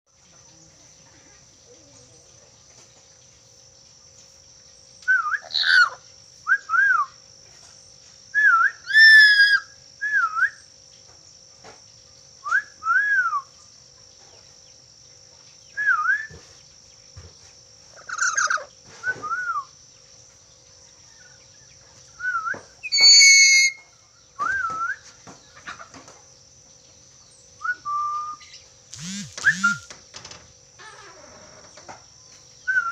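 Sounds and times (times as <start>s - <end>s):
harsh bird calls: 5.4s - 6.0s, 18.0s - 18.7s, 22.8s - 23.9s
parrot whistling: 22.8s - 23.8s
faint high whine: 27.1s - 32.9s.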